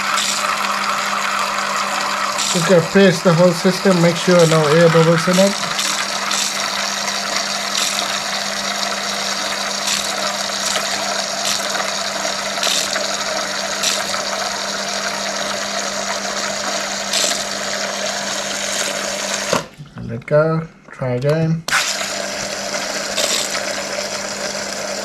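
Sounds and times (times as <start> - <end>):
water dispenser running into container: 0.0 - 19.7, 21.7 - 25.0
steady low hum: 19.7 - 21.7.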